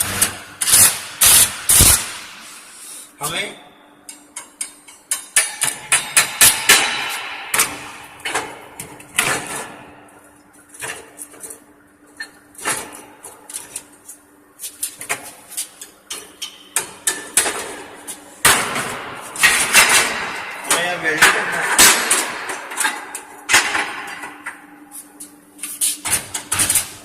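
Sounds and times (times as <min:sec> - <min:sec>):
welding arc clicks and crackling: 0:00.0 - 0:02.2.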